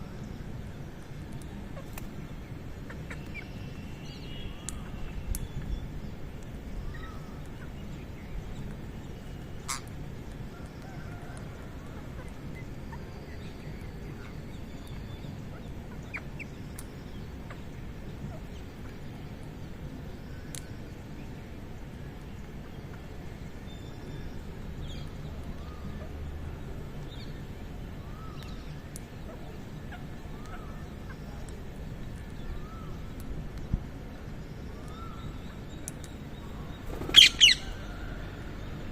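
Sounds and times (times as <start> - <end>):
low background rumble: 0.0 - 38.9
bird chirps and calls: 34.7 - 38.2.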